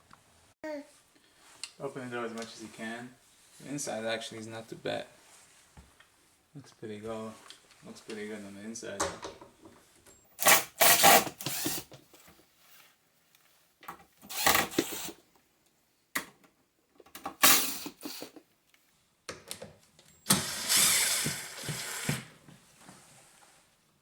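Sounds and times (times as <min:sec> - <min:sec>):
cordless drill driving screws: 0:10.3 - 0:12.0, 0:14.2 - 0:15.2, 0:17.3 - 0:18.4, 0:20.3 - 0:22.3.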